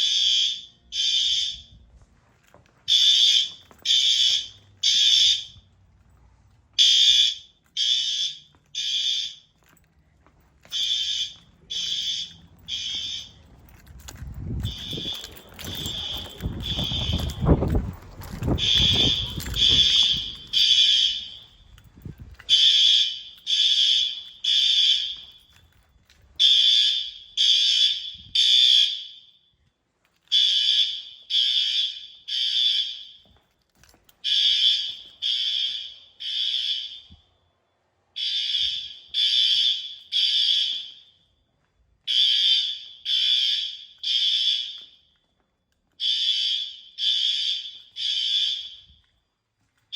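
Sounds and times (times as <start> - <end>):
high-pitched fire alarm horn: 0.0 - 1.8, 2.9 - 5.7, 6.8 - 9.5, 10.7 - 13.4, 14.6 - 25.6, 26.4 - 29.6, 30.3 - 33.4, 34.2 - 37.2, 38.2 - 41.3, 42.1 - 45.1, 46.0 - 49.0
low rumble of movement: 11.4 - 20.6.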